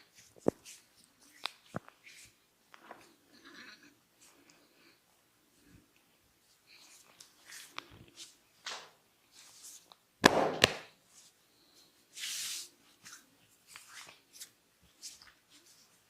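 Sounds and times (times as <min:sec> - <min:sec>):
sharp snaps: 0:10.2 - 0:11.0.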